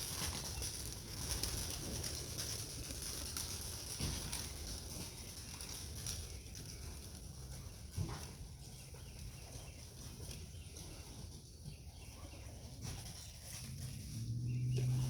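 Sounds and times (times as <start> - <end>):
pigeons cooing: 12.0 - 15.0.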